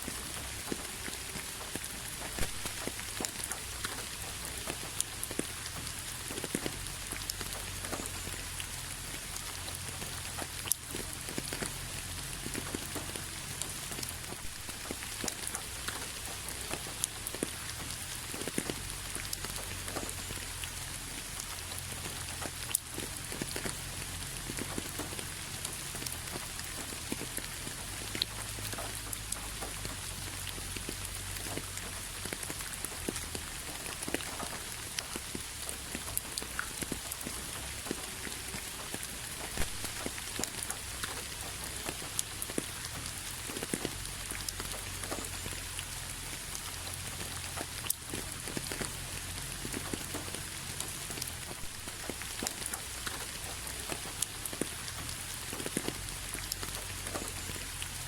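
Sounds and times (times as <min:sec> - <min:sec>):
rain on a hard surface: 0:00.0 - 0:58.0.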